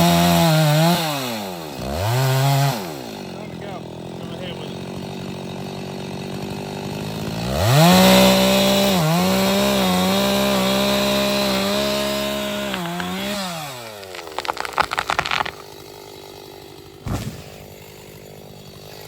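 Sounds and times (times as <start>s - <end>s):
chainsaw cutting at full throttle: 0.0s - 19.0s
tree cracking: 10.8s - 18.4s.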